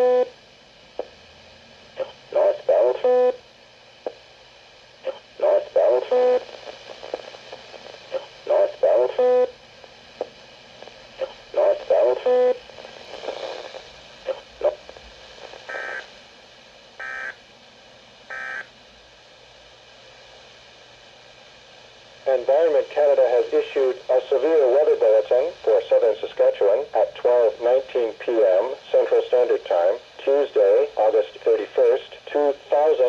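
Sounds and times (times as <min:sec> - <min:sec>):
buzzy electronic data tones: 0:15.7 - 0:16.1, 0:17.0 - 0:17.4, 0:18.3 - 0:18.7.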